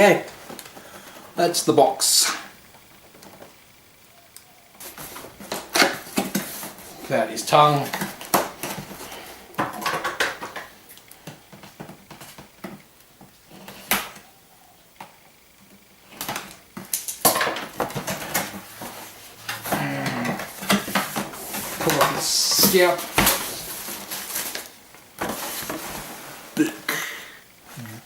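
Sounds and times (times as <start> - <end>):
packaging rustling: 16.1 - 26.6.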